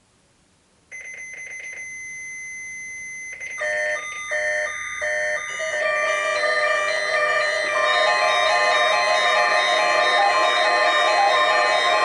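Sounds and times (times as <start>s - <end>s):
electronic alarm beeping: 0.9s - 12.0s
electronic chime tones: 1.0s - 12.0s
steady high tone: 3.7s - 12.0s.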